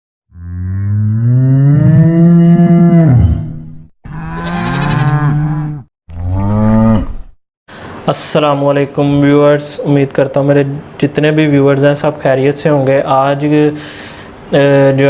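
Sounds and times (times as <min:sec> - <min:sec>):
cattle mooing: 0:00.3 - 0:07.4.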